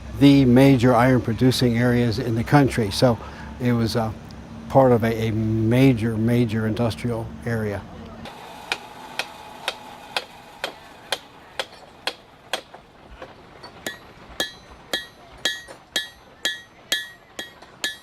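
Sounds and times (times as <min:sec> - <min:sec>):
hammer striking metal: 0:08.7 - 0:18.0.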